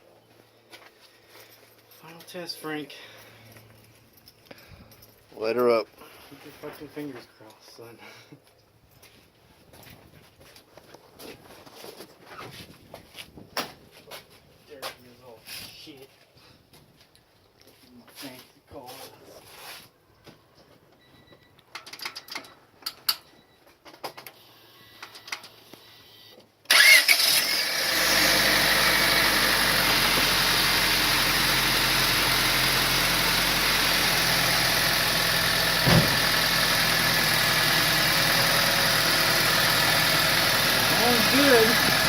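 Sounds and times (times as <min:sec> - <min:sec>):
car engine starting and idling: 0:26.7 - 0:42.0
brief thump: 0:35.8 - 0:36.2.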